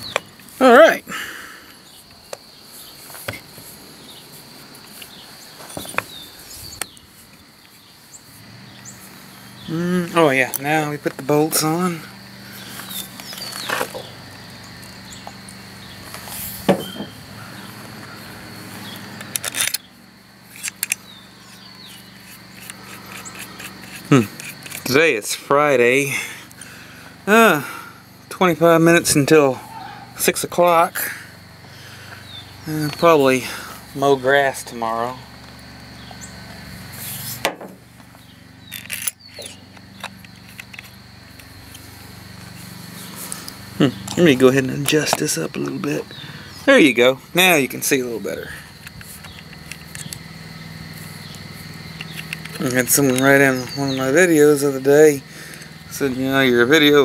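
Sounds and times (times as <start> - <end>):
cricket trill: 0.0 - 57.0
steady low hum: 0.0 - 57.0
metal parts clicking and knocking: 19.2 - 19.8, 20.5 - 21.6, 22.3 - 24.9, 38.6 - 40.9, 48.8 - 50.2.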